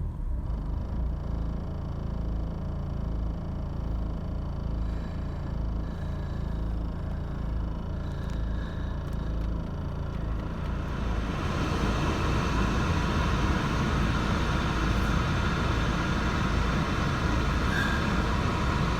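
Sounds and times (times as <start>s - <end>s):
diesel engine idling roughly: 0.4s - 18.9s.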